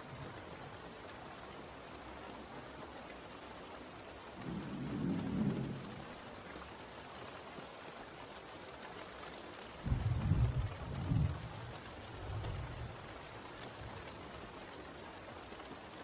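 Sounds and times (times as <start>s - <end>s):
steady rain: 0.0s - 16.0s
low rumble of thunder: 4.4s - 6.6s, 9.8s - 14.0s.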